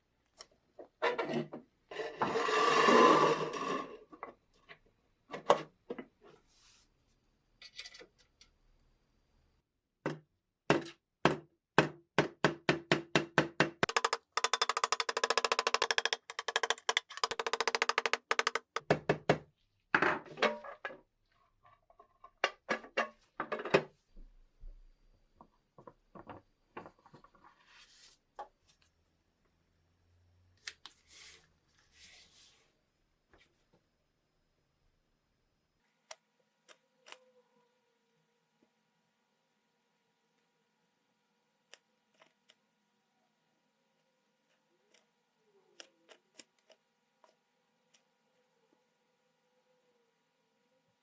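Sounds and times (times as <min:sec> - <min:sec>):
knocks and clicks on metal: 0:10.0 - 0:19.4
taps and clicks: 0:13.4 - 0:19.4.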